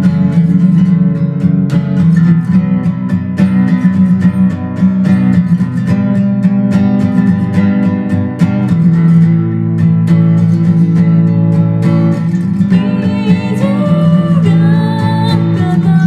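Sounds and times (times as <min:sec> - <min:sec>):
acoustic guitar strumming chords: 0:00.0 - 0:16.0
person singing: 0:12.7 - 0:16.0.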